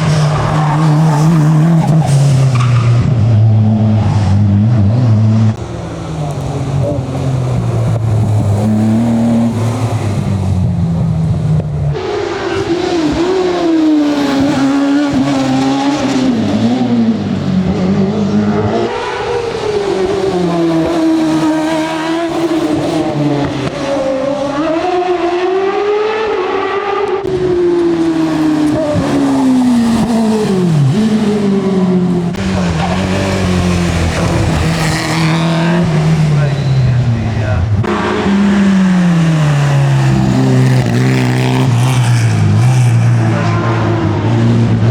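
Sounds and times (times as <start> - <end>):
racing car engine revving: 0.0 - 44.9.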